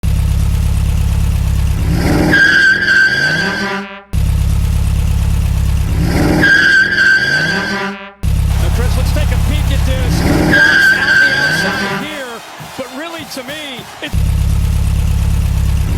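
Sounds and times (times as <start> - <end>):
high-pitched truck horn: 2.3 - 4.2, 6.4 - 12.6.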